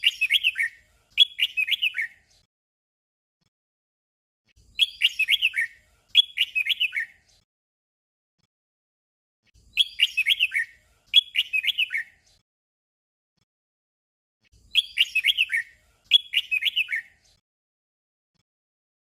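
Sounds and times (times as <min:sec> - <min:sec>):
bird singing whistled notes: 0:00.0 - 0:02.5, 0:04.6 - 0:07.4, 0:09.6 - 0:12.4, 0:14.6 - 0:17.4.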